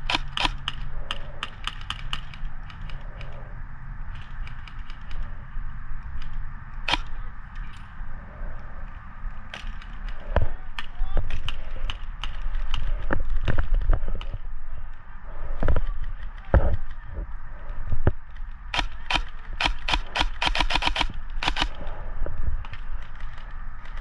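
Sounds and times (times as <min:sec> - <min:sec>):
airsoft guns firing: 0:00.0 - 0:02.8, 0:06.8 - 0:07.6, 0:18.7 - 0:22.1.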